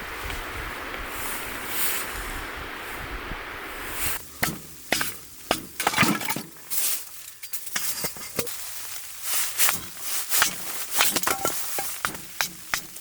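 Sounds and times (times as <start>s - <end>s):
steady hiss: 0.0s - 13.0s
cookware clinking and knocking: 4.4s - 6.6s, 10.4s - 13.0s.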